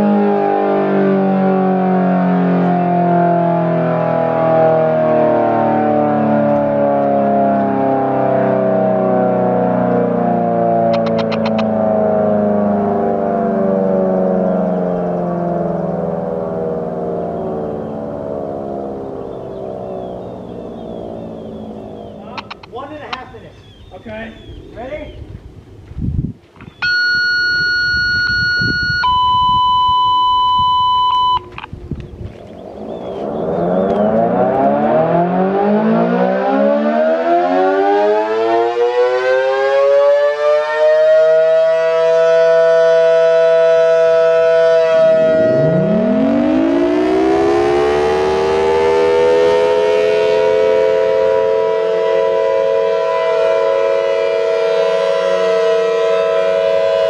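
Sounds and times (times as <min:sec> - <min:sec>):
outdoor warning siren: 0:00.0 - 0:25.8, 0:26.7 - 0:57.0
long electronic beeps: 0:10.8 - 0:13.1, 0:13.8 - 0:24.6, 0:26.7 - 0:31.7, 0:32.5 - 0:36.7, 0:43.9 - 0:49.9.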